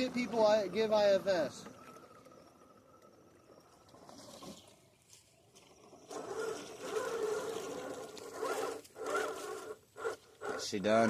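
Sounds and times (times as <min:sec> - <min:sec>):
toy car electric motor whining: 0:05.7 - 0:11.0.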